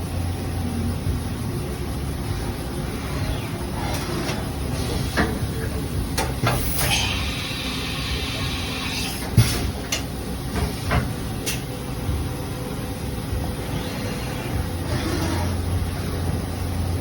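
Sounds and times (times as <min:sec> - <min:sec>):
machine hum: 0:00.0 - 0:17.0
air hiss: 0:04.7 - 0:10.0
sharp clicks and clunks: 0:06.1 - 0:07.0.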